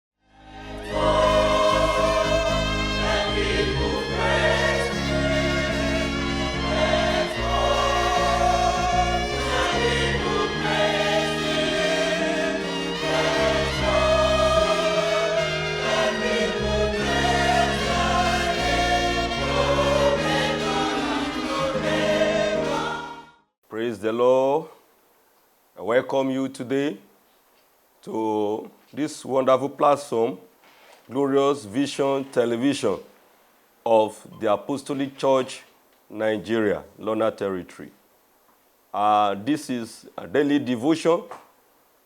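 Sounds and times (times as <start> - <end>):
gospel choir singing: 0.3 - 23.4
instrumental accompaniment with bass: 0.5 - 23.1.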